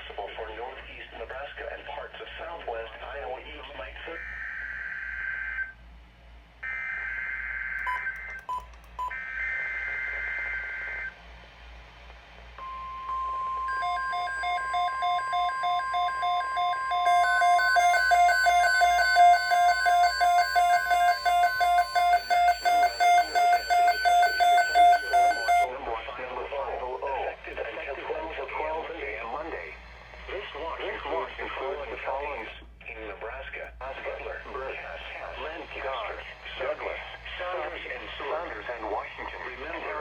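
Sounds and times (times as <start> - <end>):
steady weather alarm tone: 4.2 - 5.8, 6.6 - 8.4, 9.0 - 11.1, 12.6 - 25.7
electronic alarm beeping rapidly: 12.6 - 25.7
buzzing data bursts: 14.6 - 25.7.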